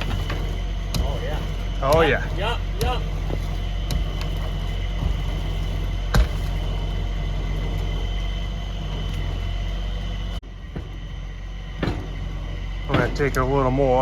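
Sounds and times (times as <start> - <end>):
truck engine running: 0.0 - 14.0
winch whine: 0.0 - 14.0.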